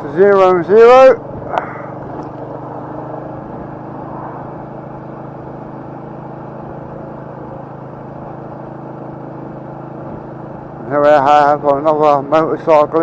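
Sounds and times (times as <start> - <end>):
motorcycle engine running steadily: 0.0 - 13.0
rush of wind noise: 1.2 - 5.0.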